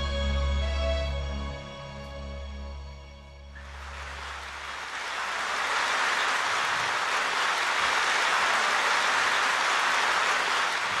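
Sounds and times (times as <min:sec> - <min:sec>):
audience applauding: 0:03.6 - 0:11.0.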